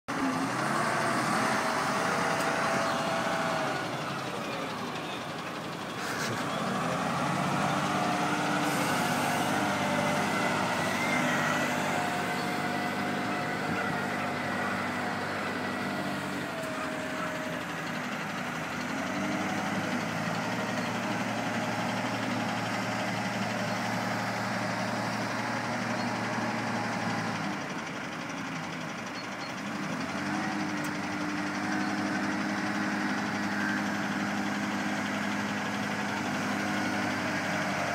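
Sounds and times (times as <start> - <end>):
wheel loader diesel engine revving: 0.1 - 37.9.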